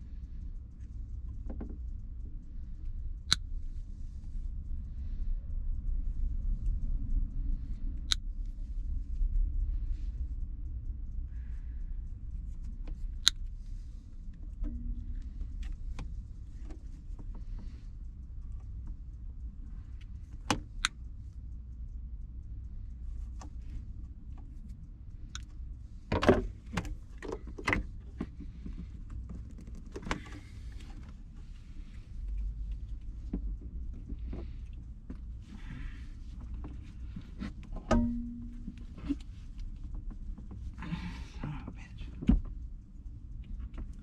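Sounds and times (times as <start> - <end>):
steady low hum: 0.0 - 44.0
tools knocking and clicking: 37.8 - 38.9.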